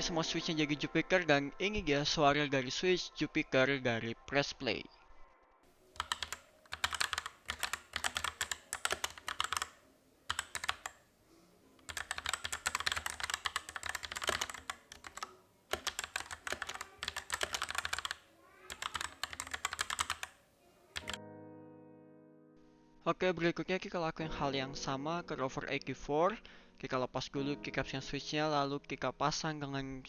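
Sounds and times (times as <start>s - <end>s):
mechanical keyboard key clicks: 6.0s - 11.0s, 11.8s - 20.4s, 21.0s - 21.2s.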